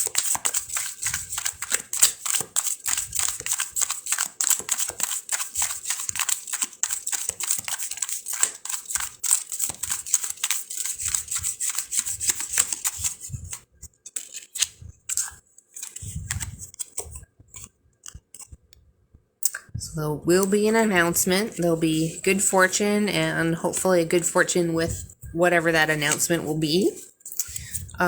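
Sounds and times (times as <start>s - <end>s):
cards being shuffled: 0.0s - 18.6s
cards tapping: 0.0s - 18.6s.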